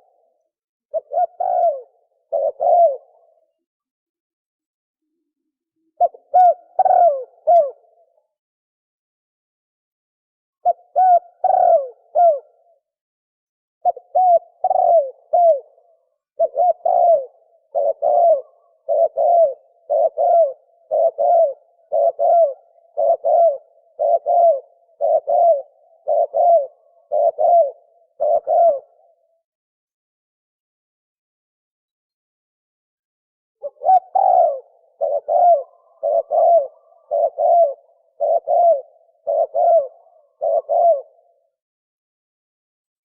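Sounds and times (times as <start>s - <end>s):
dove cooing: 0.0s - 3.6s, 5.8s - 8.2s, 10.6s - 12.8s, 13.8s - 29.4s, 33.6s - 41.6s.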